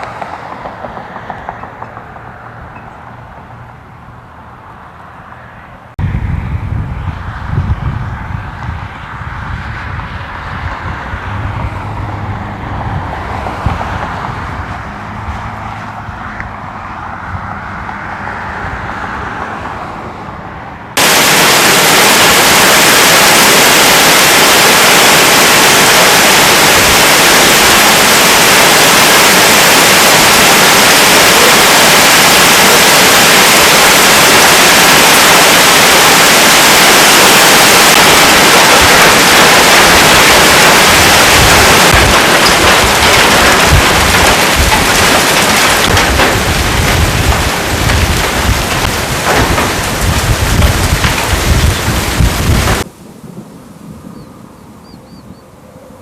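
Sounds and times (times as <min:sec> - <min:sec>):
hail and rain roaring: 0:21.0 - 0:52.9
thunder rumble: 0:21.0 - 0:52.9
low engine-like hum: 0:52.9 - 0:56.0.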